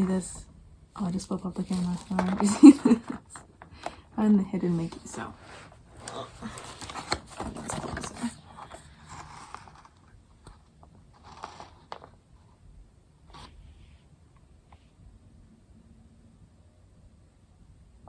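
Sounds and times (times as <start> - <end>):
packaging rustling and scraping: 1.0 - 4.0, 4.6 - 12.2.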